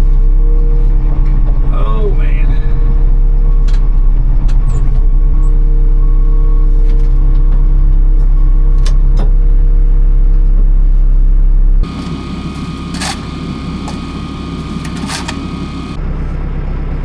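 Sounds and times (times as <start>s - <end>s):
heavy equipment engine droning: 0.0s - 17.0s
machine high whine: 11.9s - 16.0s.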